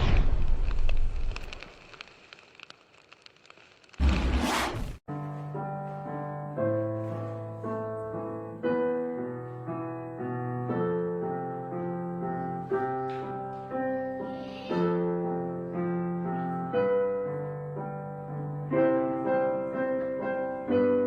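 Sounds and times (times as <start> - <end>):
slow piano chords: 5.1 - 21.0.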